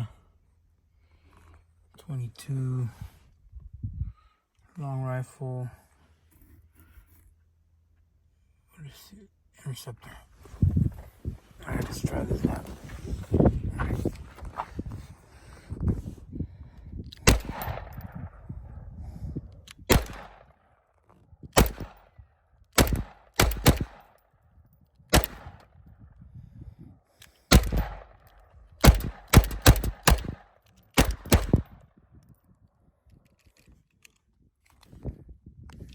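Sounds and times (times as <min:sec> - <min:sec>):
pistol shots with echo: 0:17.2 - 0:18.2, 0:19.9 - 0:20.5, 0:21.6 - 0:22.1, 0:22.8 - 0:24.2, 0:25.1 - 0:25.6, 0:27.5 - 0:28.2, 0:28.8 - 0:31.7.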